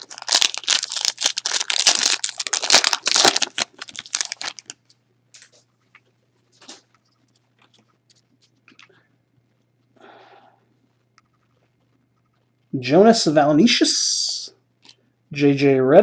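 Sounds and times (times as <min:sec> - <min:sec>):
wrapper tearing and crinkling: 0:00.0 - 0:04.8.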